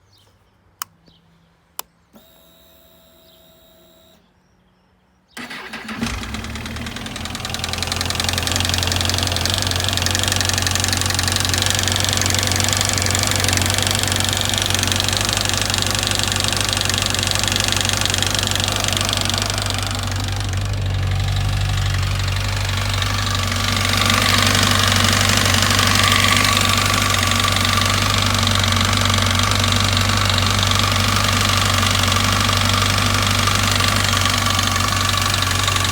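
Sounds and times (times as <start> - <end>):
click and electric hum: 0.8 - 4.2
engine rattle: 5.4 - 35.9
starter cranking: 5.4 - 35.9
motorcycle engine idling: 5.6 - 35.9.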